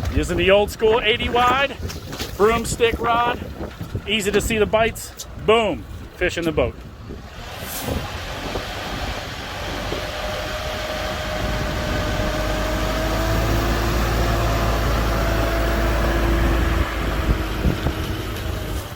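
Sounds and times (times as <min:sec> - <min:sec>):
wind buffeting microphone: 0:00.0 - 0:18.9
boat motor drone: 0:06.0 - 0:18.9.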